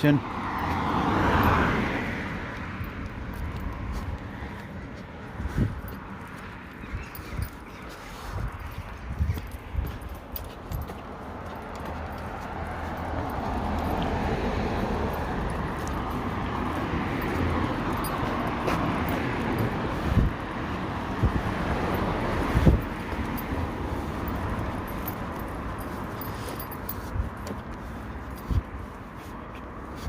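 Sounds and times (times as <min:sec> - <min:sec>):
vehicle passing on road: 0:00.0 - 0:30.0
wind thumping on microphone: 0:05.4 - 0:06.1, 0:08.3 - 0:10.2, 0:18.5 - 0:23.2.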